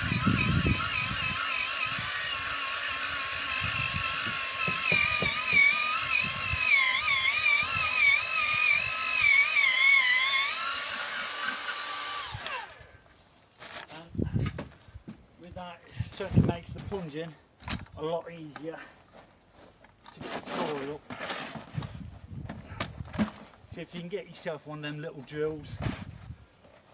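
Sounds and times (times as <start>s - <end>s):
drill bit knocking in soil: 0.0s - 10.4s
power drill motor whine: 0.0s - 12.9s.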